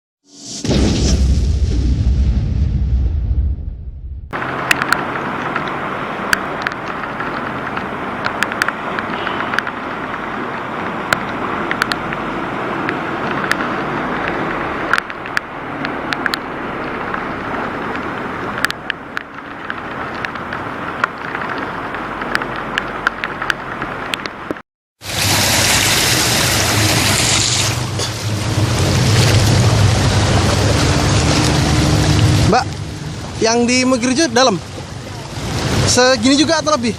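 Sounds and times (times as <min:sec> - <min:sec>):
low engine hum: 0:03.0 - 0:36.0
motor vehicles running: 0:04.3 - 0:36.9
water splashing and rushing: 0:04.3 - 0:36.9
sharp clicks: 0:04.6 - 0:10.2.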